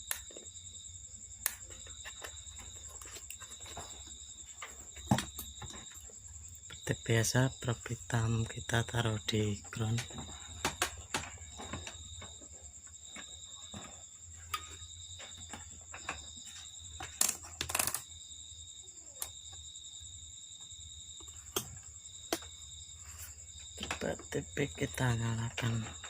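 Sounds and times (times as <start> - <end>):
crickets trilling: 0.0 - 26.0.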